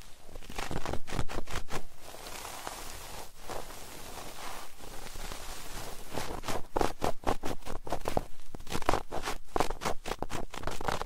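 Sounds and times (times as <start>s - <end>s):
scratchy crackles and crunches: 0.0s - 11.0s.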